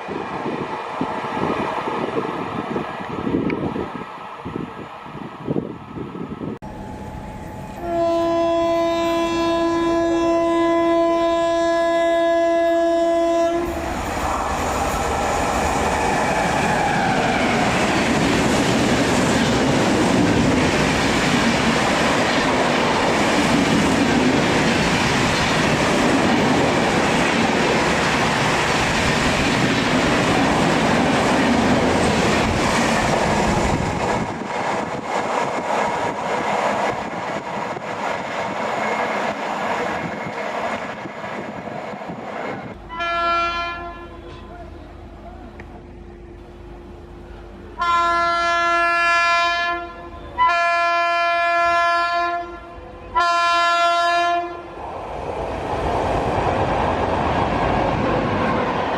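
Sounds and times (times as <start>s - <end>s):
train horn blast: 6.6s - 13.9s, 42.8s - 44.6s, 47.8s - 54.8s
train wheels clattering on rails: 13.7s - 42.8s.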